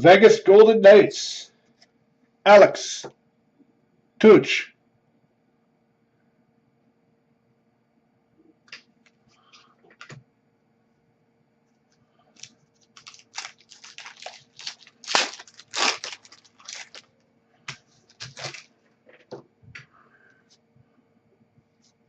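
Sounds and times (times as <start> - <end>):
wrappers crinkling: 12.3 - 18.8.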